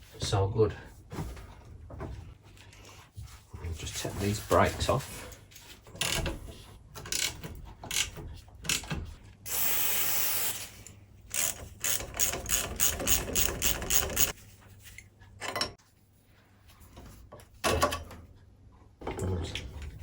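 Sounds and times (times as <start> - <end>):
ratchet spanner clicking: 11.3 - 14.3.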